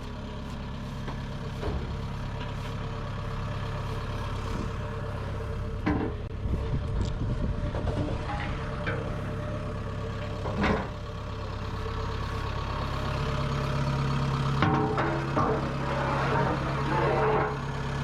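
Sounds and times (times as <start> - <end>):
heavy vehicle engine running: 0.0 - 18.0.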